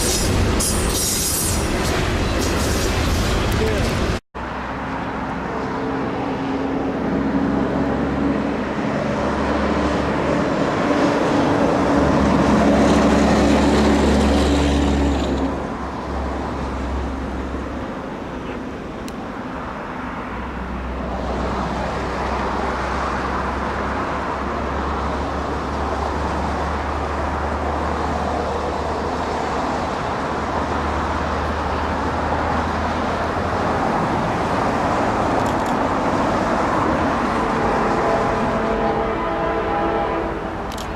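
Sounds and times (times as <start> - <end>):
freight cars rolling by: 0.0 - 18.8
locomotive engines droning: 21.6 - 40.9.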